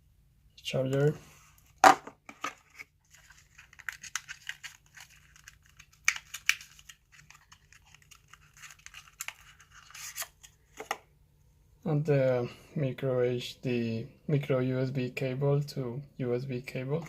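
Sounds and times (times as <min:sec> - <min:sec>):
packaging crinkling and rustling: 0:02.2 - 0:10.9.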